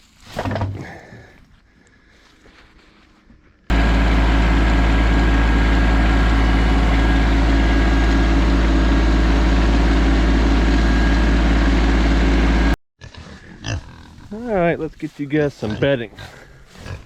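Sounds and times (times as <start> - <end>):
tractor engine running: 3.7 - 12.8.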